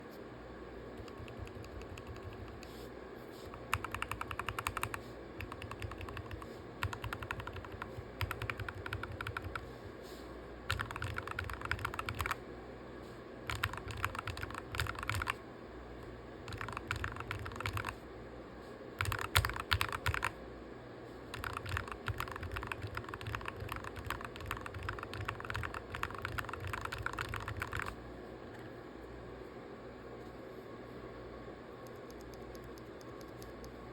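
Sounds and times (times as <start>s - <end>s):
typing on mechanical keyboard: 1.0s - 2.6s, 3.5s - 9.6s, 10.7s - 12.4s, 13.5s - 15.4s, 16.5s - 18.0s, 19.0s - 20.3s, 21.3s - 28.0s, 31.8s - 33.7s.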